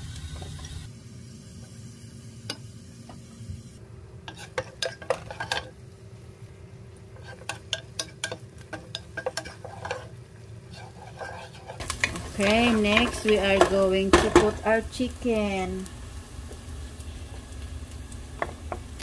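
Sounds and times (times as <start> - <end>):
onion sizzling in hot oil: 0.0 - 19.0
utensil scraping and clicking on pan: 4.3 - 5.7, 7.2 - 14.5.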